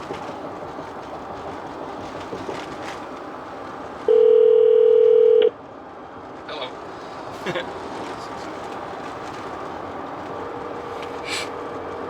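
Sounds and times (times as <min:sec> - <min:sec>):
road and engine noise in cabin: 0:00.0 - 0:12.0
phone electronic tone: 0:04.1 - 0:05.5.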